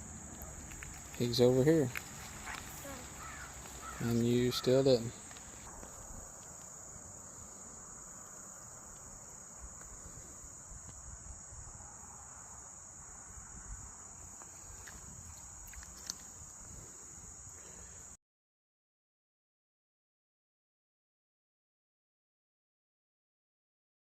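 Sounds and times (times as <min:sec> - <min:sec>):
insects chirping: 0:00.0 - 0:18.2.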